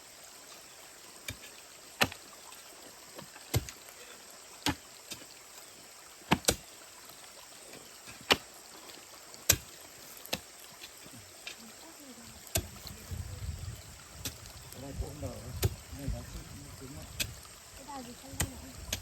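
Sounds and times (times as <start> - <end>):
digging tool striking stony ground: 1.3 - 2.3, 3.2 - 3.8, 4.6 - 5.2, 6.3 - 6.7, 8.1 - 8.5, 9.4 - 11.6, 12.4 - 12.9, 14.2 - 14.5, 15.5 - 15.8, 17.1 - 17.4.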